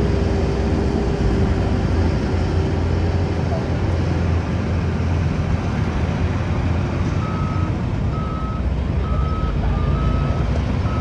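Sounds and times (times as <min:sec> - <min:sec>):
diesel engine running: 0:00.0 - 0:11.0
reversing alarm beeps: 0:07.2 - 0:11.0.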